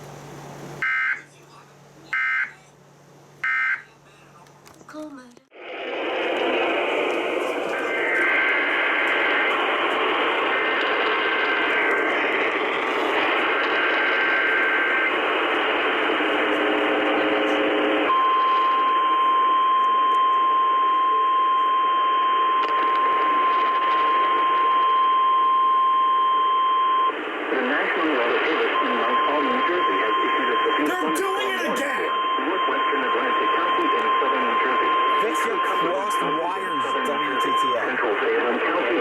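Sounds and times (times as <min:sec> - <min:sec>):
steady alarm tone: 0:00.8 - 0:01.2, 0:02.1 - 0:02.5, 0:03.4 - 0:03.9, 0:05.7 - 0:27.4, 0:28.5 - 0:38.0
radio static hiss: 0:03.5 - 0:04.8, 0:05.6 - 0:19.0, 0:27.1 - 0:39.0
warbling data tones: 0:05.6 - 0:26.4, 0:28.0 - 0:38.1.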